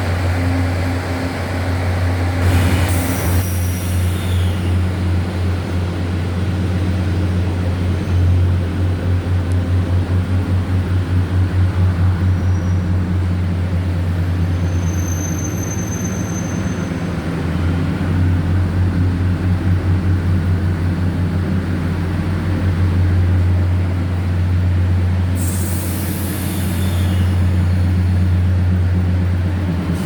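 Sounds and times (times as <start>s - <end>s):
train low hum: 0.0s - 30.0s
brief hiss: 2.4s - 5.0s, 25.4s - 27.8s.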